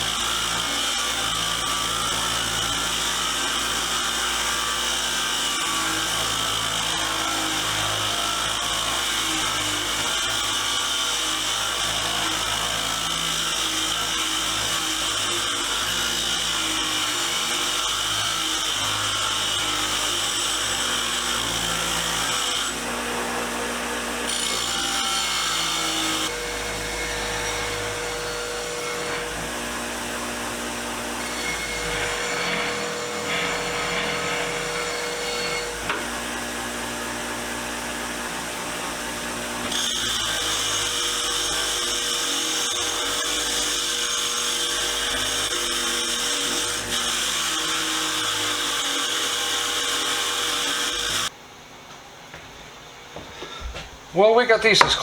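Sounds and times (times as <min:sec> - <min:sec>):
wire wheel scrubbing metal: 0:26.0 - 0:36.8.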